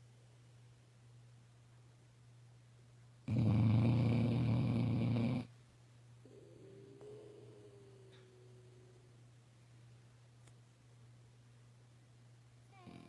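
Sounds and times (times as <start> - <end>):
puppy snoring: 3.2 - 5.5, 6.2 - 8.9, 12.7 - 13.0.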